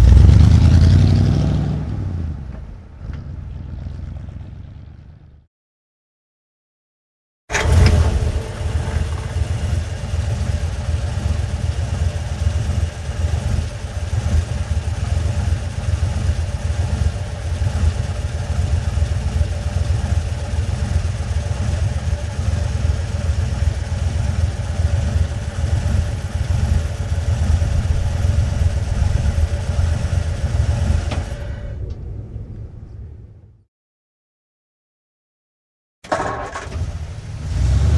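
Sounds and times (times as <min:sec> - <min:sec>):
truck engine running: 0:07.5 - 0:33.0, 0:36.1 - 0:37.9.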